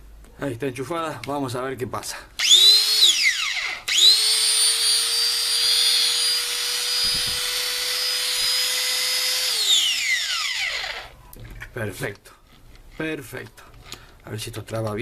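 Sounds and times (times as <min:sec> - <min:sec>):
angle grinder whining: 0:02.4 - 0:11.2.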